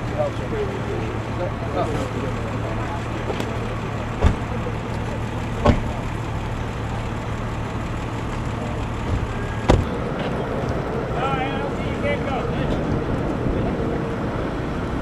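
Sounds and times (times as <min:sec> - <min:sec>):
vehicle engine idling: 0:00.0 - 0:15.0
sharp knocks: 0:09.1 - 0:09.9.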